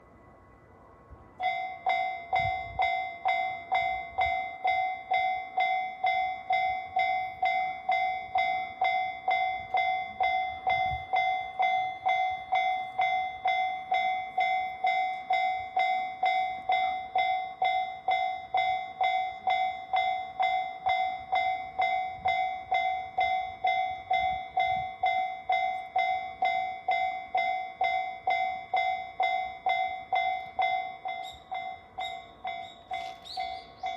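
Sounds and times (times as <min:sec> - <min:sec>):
level crossing bell: 0:01.4 - 0:33.9.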